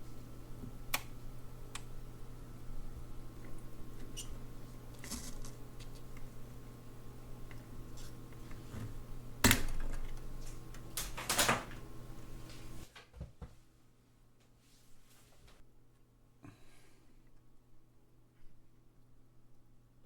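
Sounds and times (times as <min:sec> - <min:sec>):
steady low hum: 0:00.0 - 0:12.9.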